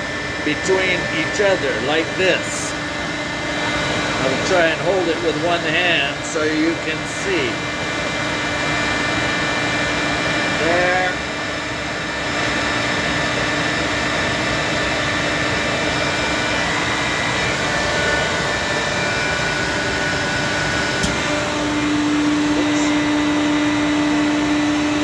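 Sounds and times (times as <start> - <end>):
electric compressor running: 0.0 - 25.0
compressor click: 20.8 - 23.8.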